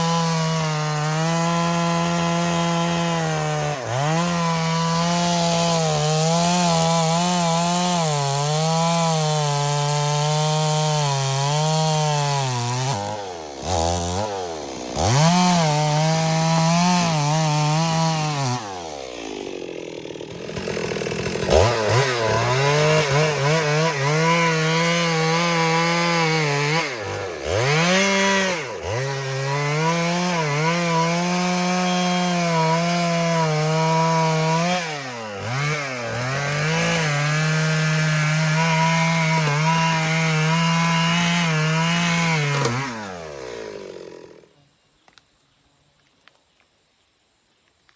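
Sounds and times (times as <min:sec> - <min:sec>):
chainsaw cutting wood: 0:00.0 - 0:44.6.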